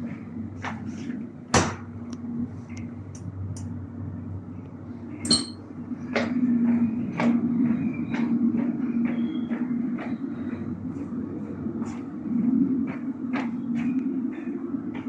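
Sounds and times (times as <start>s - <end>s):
train carriage low hum: 0.0s - 15.0s
ringing clank: 5.3s - 5.6s.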